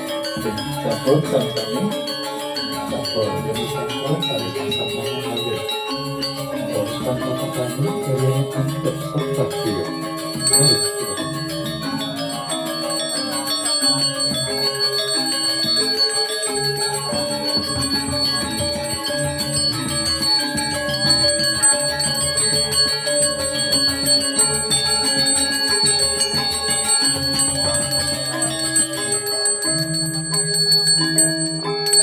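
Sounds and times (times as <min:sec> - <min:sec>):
bell ringing steadily: 0:00.0 - 0:32.0
metallic mallet instruments melody: 0:00.0 - 0:32.0.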